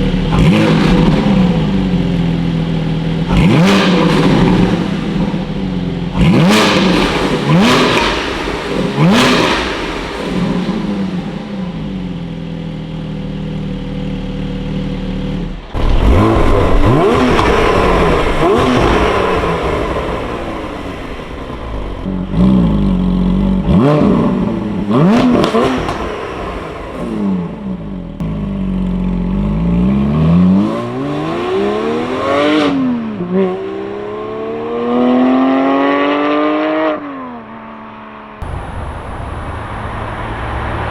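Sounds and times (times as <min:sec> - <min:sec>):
car engine revving: 0:00.0 - 0:37.8, 0:38.4 - 0:40.9.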